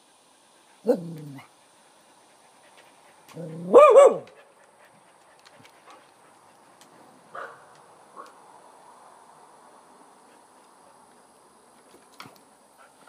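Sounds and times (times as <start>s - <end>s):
dog growling: 0.8s - 1.5s, 3.3s - 3.8s
dog barking: 3.4s - 4.3s, 7.3s - 8.4s.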